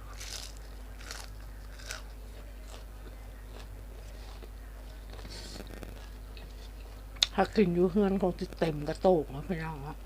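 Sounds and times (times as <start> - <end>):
person chewing with wet mouth sounds: 0.0 - 7.4
steady low hum: 0.0 - 10.0.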